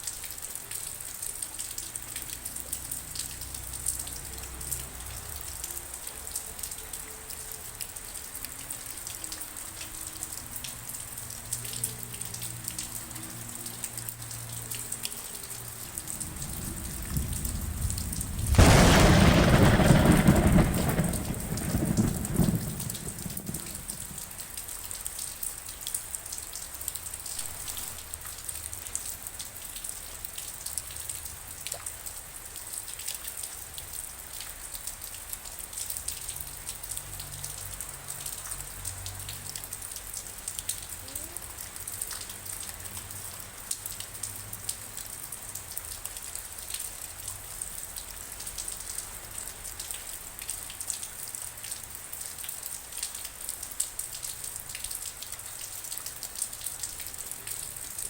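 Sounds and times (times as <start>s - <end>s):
steady rain falling: 0.0s - 58.0s
low rumble of thunder: 15.7s - 24.6s.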